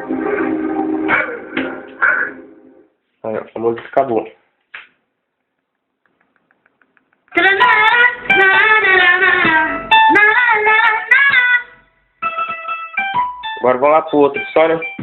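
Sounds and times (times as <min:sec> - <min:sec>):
song with singing and guitar: 0:07.3 - 0:13.6.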